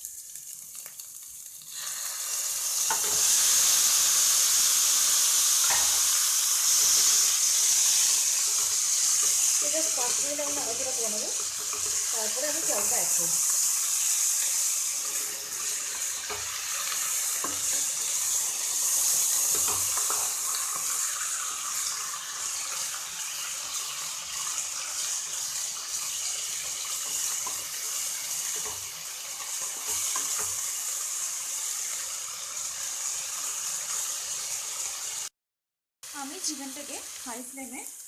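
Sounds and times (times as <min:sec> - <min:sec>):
chicken sizzling in hot oil: 0:00.0 - 0:35.3, 0:36.0 - 0:38.0
spoon knocking pan: 0:05.6 - 0:06.2, 0:06.8 - 0:13.0, 0:15.1 - 0:20.9, 0:26.0 - 0:30.7.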